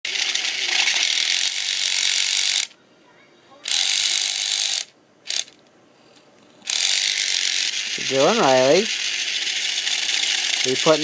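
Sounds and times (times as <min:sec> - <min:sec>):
small drill running in bursts: 0:00.1 - 0:02.7, 0:06.7 - 0:11.0.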